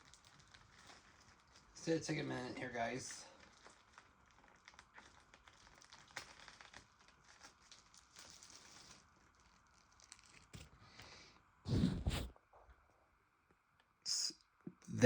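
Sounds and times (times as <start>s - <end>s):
plastic shrink wrap crackling: 0.0s - 11.0s.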